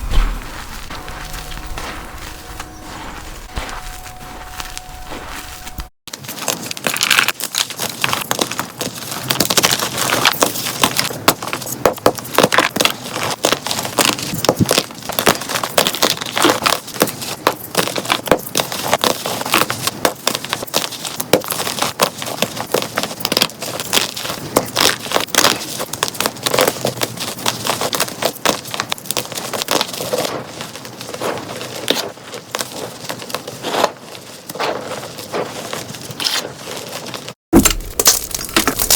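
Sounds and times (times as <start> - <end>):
chalk blocks being crushed: 6.1 - 38.9.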